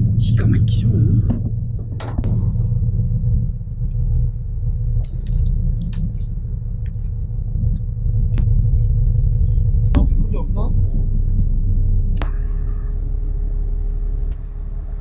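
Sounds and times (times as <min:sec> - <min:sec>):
boat engine rumbling: 0:00.0 - 0:15.0
sharp clicks and knocks: 0:01.2 - 0:04.2.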